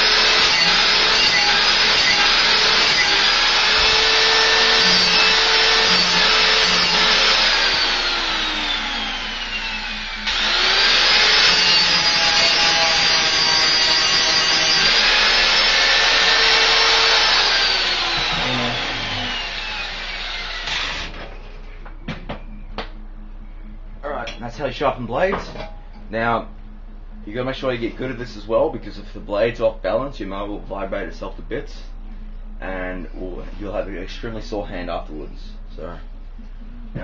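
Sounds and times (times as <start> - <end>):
angle grinder grinding metal: 0.0 - 21.4.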